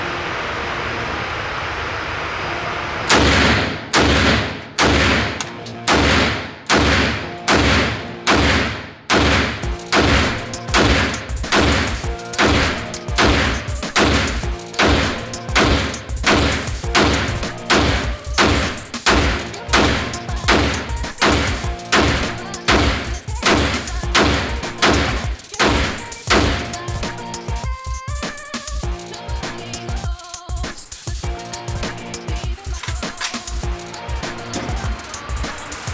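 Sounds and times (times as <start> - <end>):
pistol shots with echo: 3.1 - 26.8.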